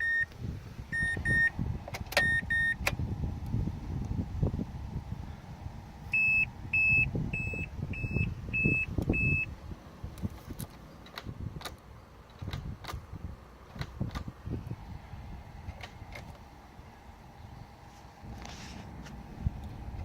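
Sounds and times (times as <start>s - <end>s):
car warning chime beeps: 0.0s - 0.3s, 0.9s - 2.9s, 6.1s - 9.5s.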